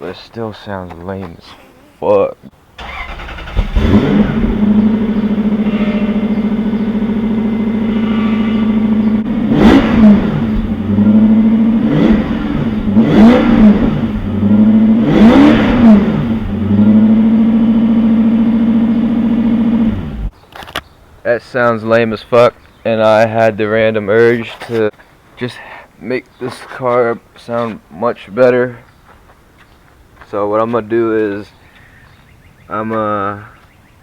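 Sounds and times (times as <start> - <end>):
car engine idling and revving: 2.8 - 20.3.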